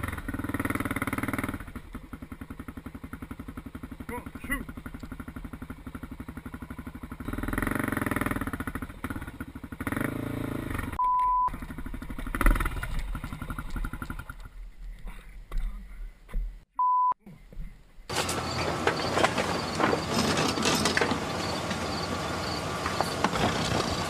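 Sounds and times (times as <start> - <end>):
vehicle engine running: 0.0 - 16.2, 18.1 - 24.0
short electronic beep: 11.0 - 11.5, 16.8 - 17.2.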